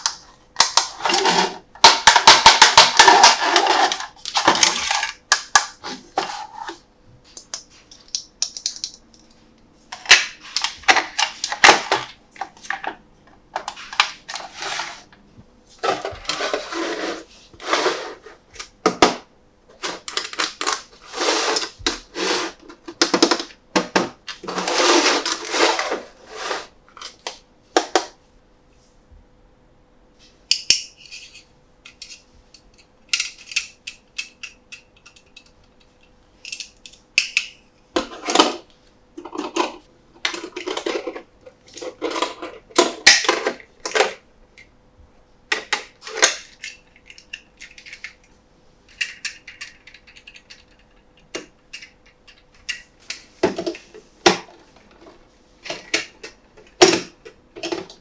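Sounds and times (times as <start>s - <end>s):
packaging rustling and crinkling: 53.0s - 53.8s.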